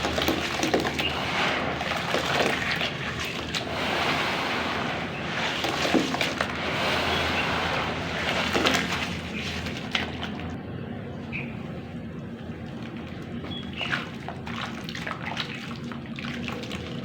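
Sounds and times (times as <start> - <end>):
clay crumbling in water: 0.0 - 10.5.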